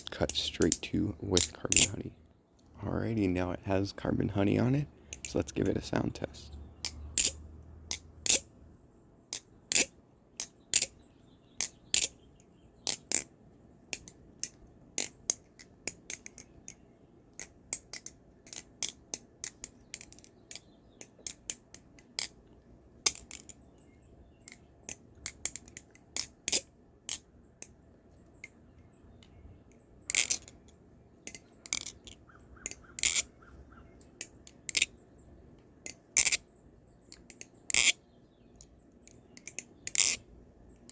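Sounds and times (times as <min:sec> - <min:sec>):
butterfly knife clicks and clacks: 0:00.3 - 0:02.0, 0:05.1 - 0:05.4, 0:06.8 - 0:08.5, 0:09.3 - 0:11.0, 0:11.6 - 0:12.2, 0:12.8 - 0:13.3, 0:13.9 - 0:22.4, 0:23.0 - 0:23.6, 0:24.4 - 0:27.8, 0:29.2 - 0:33.3, 0:34.1 - 0:34.9, 0:35.8 - 0:36.4, 0:37.1 - 0:38.0, 0:38.6 - 0:40.2.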